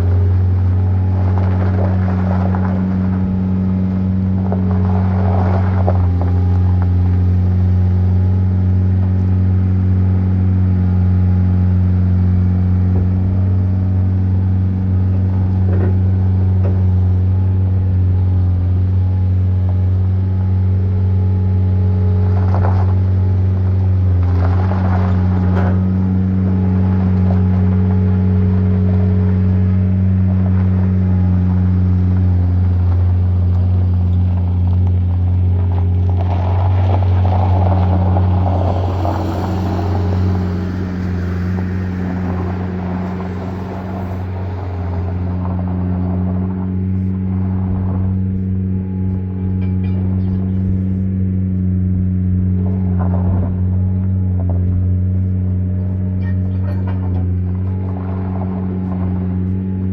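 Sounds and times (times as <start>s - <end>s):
engine droning steadily: 0.0s - 59.9s
rattles and clanks: 22.1s - 51.3s, 52.6s - 59.9s.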